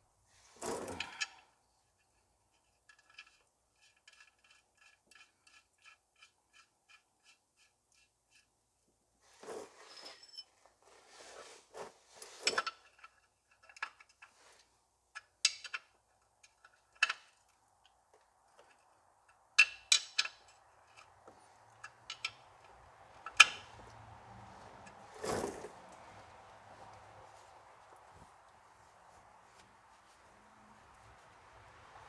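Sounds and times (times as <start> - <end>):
metal tools clinking and clanking: 9.8 - 10.5.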